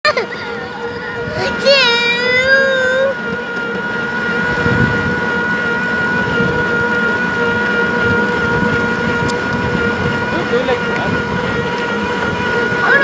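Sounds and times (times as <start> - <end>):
motorbike engine whine: 0.0 - 13.0
rough road noise: 0.1 - 13.0
wind noise: 0.6 - 13.0.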